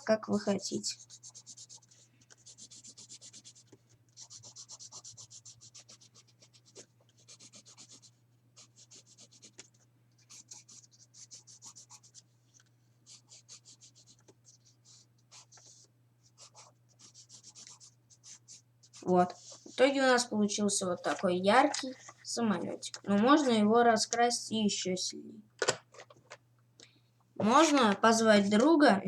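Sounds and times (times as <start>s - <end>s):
drawing tool scribbling on paper: 0.9s - 12.2s, 13.1s - 19.9s.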